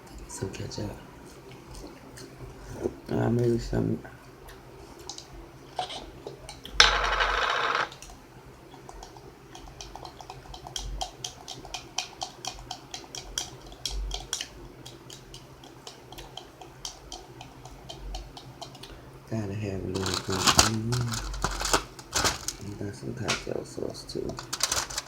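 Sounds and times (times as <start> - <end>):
forks clicking against dishes: 8.8 - 18.9.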